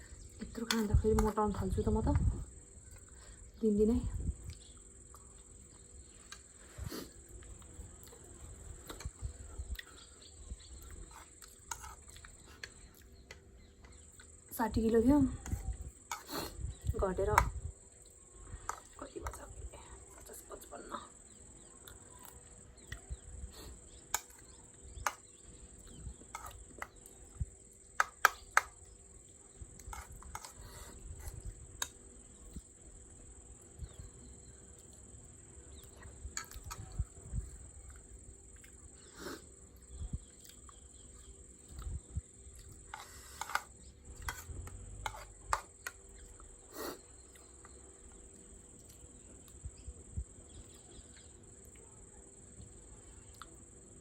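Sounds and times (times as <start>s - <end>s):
cricket trilling: 0.0s - 54.0s
chewing: 4.4s - 14.4s, 34.7s - 49.6s, 52.6s - 53.6s.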